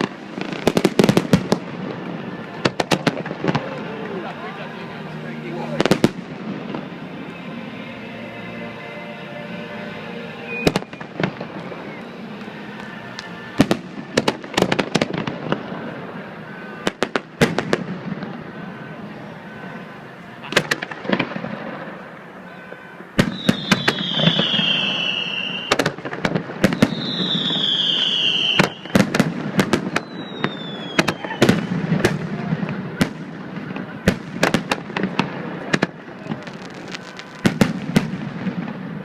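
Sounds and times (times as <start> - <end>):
fireworks bangs and crackling: 0.0 - 7.4, 10.5 - 39.0
falling firework whistles: 10.4 - 12.2, 23.2 - 32.1, 36.2 - 38.2.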